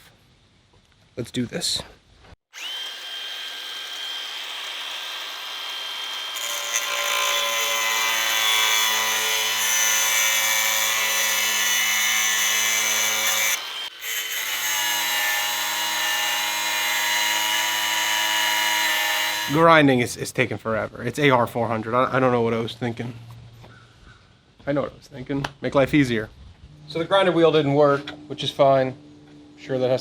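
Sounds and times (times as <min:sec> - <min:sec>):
angle grinder cutting steel: 0:02.5 - 0:19.6.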